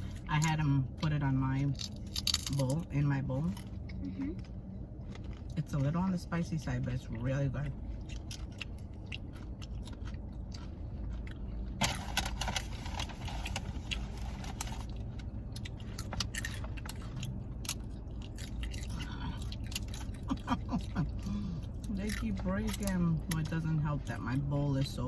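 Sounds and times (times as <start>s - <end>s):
car air conditioning hum: 0.0s - 25.0s
crunching tortilla chips: 1.7s - 2.8s, 8.0s - 23.5s.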